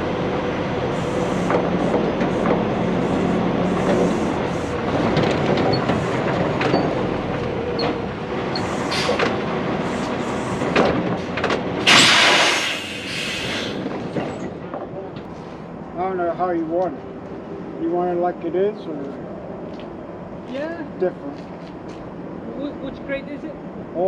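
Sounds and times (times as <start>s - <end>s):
heavy vehicle rumbling: 0.0s - 24.0s
clanks and rattles: 4.8s - 9.5s, 10.6s - 12.1s
loud burst of hiss: 8.6s - 9.2s, 9.9s - 13.9s.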